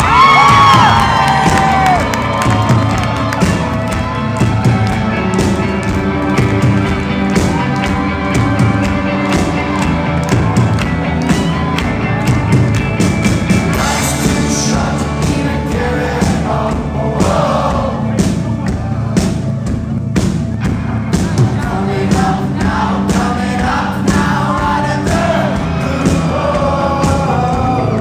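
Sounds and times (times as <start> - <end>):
drums keeping a beat: 0.0 - 28.0
live rock band playing: 0.0 - 28.0
person singing: 13.6 - 19.1, 21.3 - 28.0.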